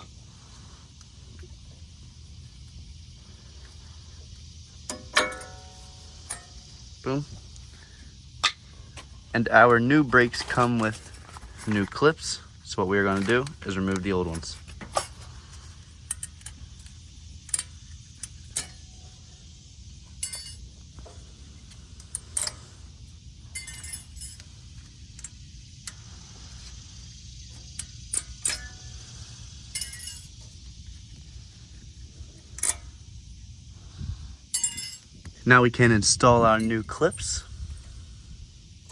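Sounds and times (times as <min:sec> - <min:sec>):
steady low rumble: 0:00.0 - 0:38.9
metal clips jingling: 0:04.9 - 0:07.3, 0:09.4 - 0:12.1, 0:13.0 - 0:19.0, 0:20.2 - 0:22.8, 0:23.5 - 0:26.0, 0:27.6 - 0:30.6, 0:32.4 - 0:33.0, 0:34.5 - 0:35.2, 0:36.2 - 0:38.0.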